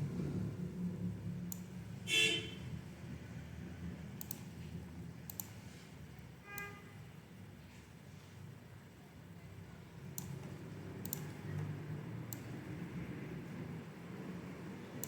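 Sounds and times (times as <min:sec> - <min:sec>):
quiet clicks: 0:04.2 - 0:04.5, 0:05.3 - 0:05.6, 0:10.1 - 0:12.6.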